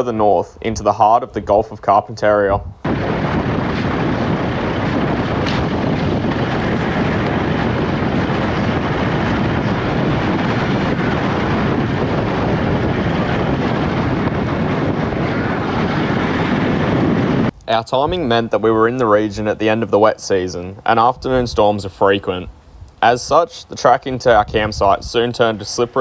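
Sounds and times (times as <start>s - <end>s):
wind on microphone: 0.0s - 26.0s.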